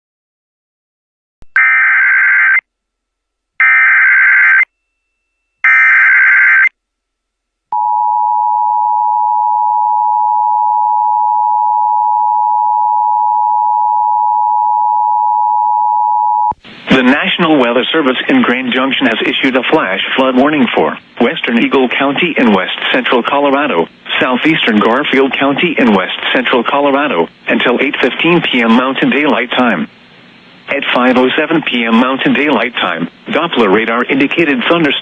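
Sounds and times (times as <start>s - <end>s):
long steady attention tone: 7.7s - 35.0s.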